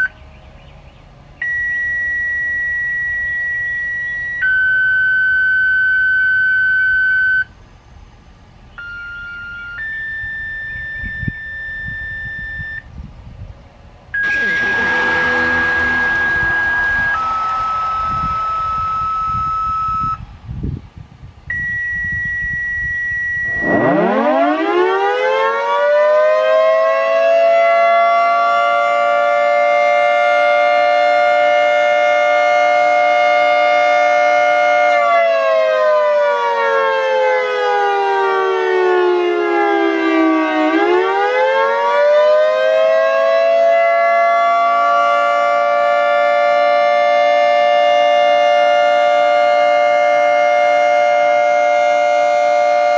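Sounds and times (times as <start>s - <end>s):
dual-tone warning siren: 1.4s - 7.5s, 8.8s - 12.9s, 14.2s - 20.6s, 21.5s - 52.9s
long steady tones: 14.2s - 20.6s.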